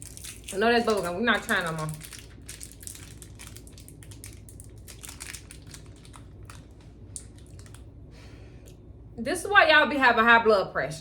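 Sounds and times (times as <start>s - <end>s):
plastic wrapper crinkling: 0.0s - 7.9s.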